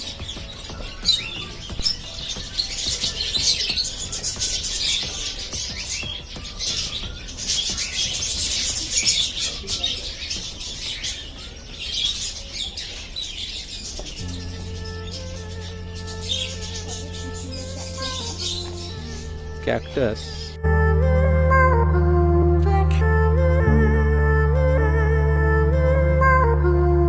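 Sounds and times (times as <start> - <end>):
small birds chirping and twittering: 0.0 - 20.6.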